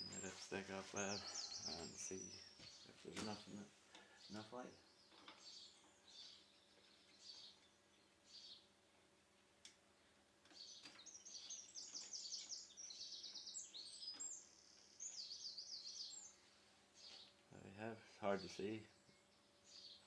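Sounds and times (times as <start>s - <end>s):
songbird singing: 0.0s - 20.0s.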